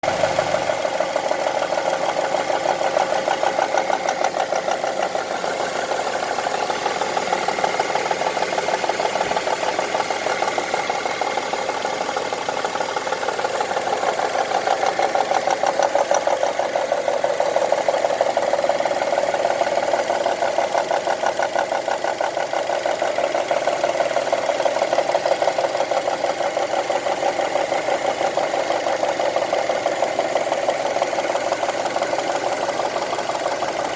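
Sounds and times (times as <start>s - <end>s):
car engine idling: 0.0s - 33.9s
fast steady ticking: 0.0s - 33.9s.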